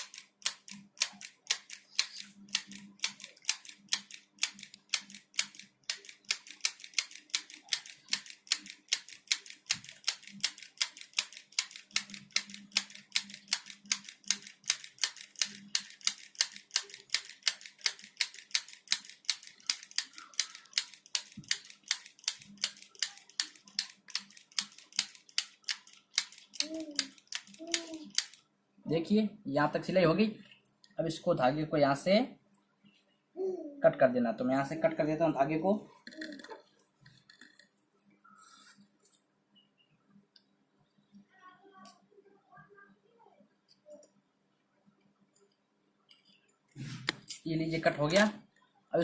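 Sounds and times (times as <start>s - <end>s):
handheld sewing machine clicking: 0.0s - 28.4s.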